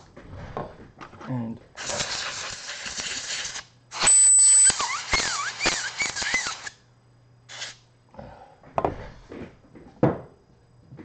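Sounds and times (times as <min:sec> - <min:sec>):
compressed air hissing bursts: 0:01.8 - 0:06.7, 0:07.5 - 0:07.8
high fan whistle: 0:03.9 - 0:06.8
wavering squeaky whistles: 0:04.0 - 0:06.7.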